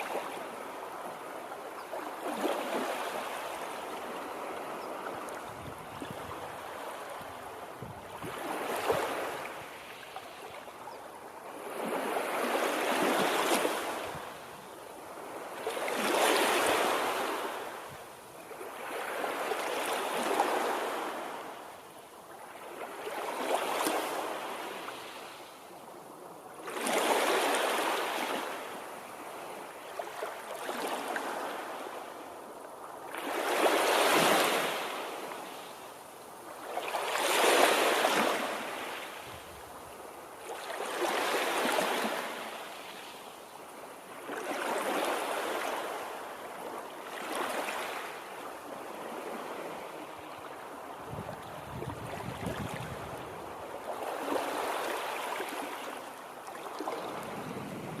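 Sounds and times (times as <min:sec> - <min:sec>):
water waves washing in: 0:48.8 - 0:58.0.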